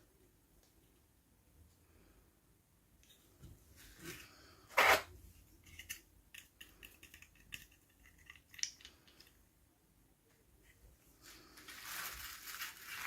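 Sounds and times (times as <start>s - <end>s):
packaging snip or crinkle: 11.4s - 13.0s.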